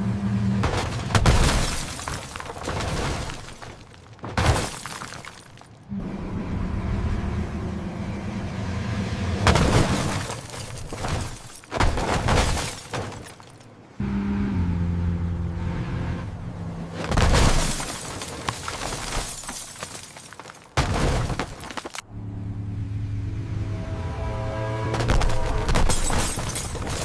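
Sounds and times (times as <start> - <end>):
car crashes: 0.6 - 5.5, 9.2 - 13.7, 17.0 - 22.0, 24.8 - 27.0
metal breaking: 0.6 - 5.8, 9.5 - 13.7, 17.0 - 22.0, 25.0 - 27.0
glass shattering: 1.2 - 3.7, 4.4 - 5.7, 9.5 - 13.6, 17.1 - 22.0, 25.7 - 27.0.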